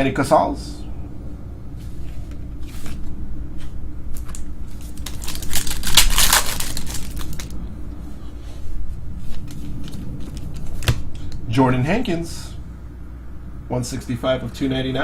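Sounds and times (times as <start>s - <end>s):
steady low hum: 0.0s - 15.0s
cards being handled: 1.9s - 7.5s
wrapper crinkling: 4.2s - 7.6s.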